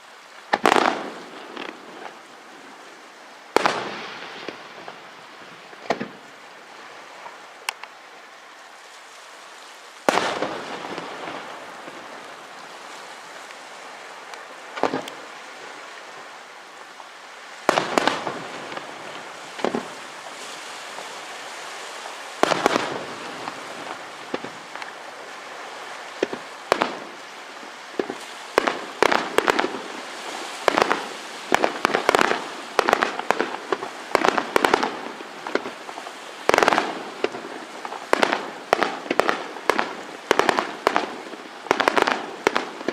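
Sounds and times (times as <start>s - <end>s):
firework bangs with crackling: 0.5s - 2.2s, 3.5s - 5.0s, 10.0s - 12.1s, 14.8s - 15.1s, 17.7s - 20.1s, 22.4s - 24.9s, 26.2s - 27.2s, 28.0s - 42.9s.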